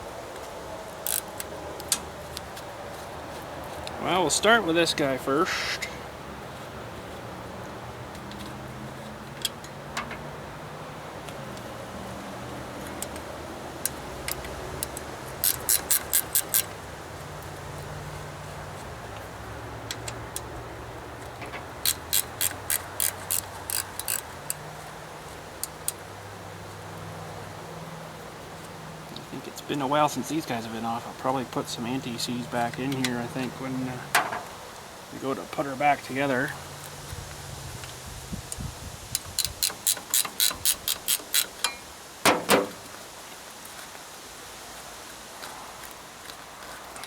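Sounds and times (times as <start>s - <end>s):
ratchet wrench clicking: 1.0s - 2.0s, 13.8s - 16.7s, 21.8s - 24.6s, 39.1s - 41.8s
scattered ticks: 12.8s - 16.8s
metallic clanks: 34.1s - 34.5s, 41.4s - 42.8s.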